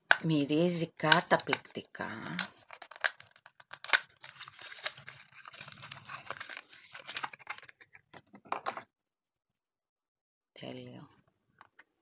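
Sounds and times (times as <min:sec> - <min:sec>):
packaging crinkling and tearing: 0:01.1 - 0:08.3.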